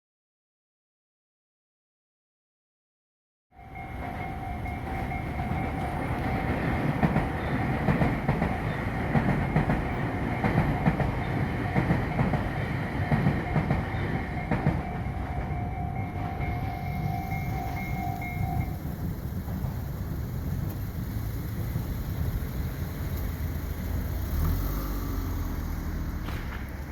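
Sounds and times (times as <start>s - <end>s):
level crossing warning bell: 3.6s - 19.6s
train rumbling with wheel clatter: 3.6s - 26.9s.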